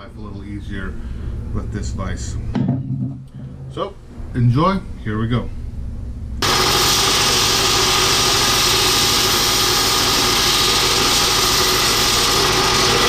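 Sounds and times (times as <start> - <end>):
electric grinder grinding steel: 6.4 - 13.0.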